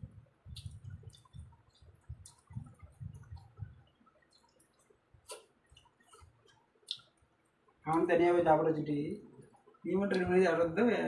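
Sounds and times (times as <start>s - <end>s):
wet eating squishes by hand: 0.5s - 7.3s.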